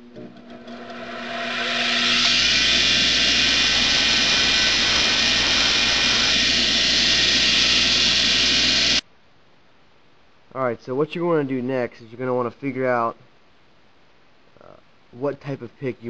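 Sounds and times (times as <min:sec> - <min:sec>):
grinder motor hum: 0:00.0 - 0:09.0
grinder wheel grinding metal: 0:00.1 - 0:09.0.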